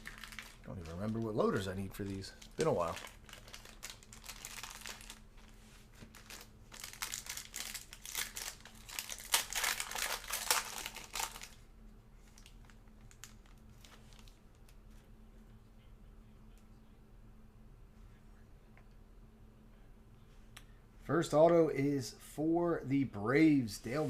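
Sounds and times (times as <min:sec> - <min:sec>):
plastic packaging crinkling: 0:00.0 - 0:11.6, 0:12.2 - 0:14.8.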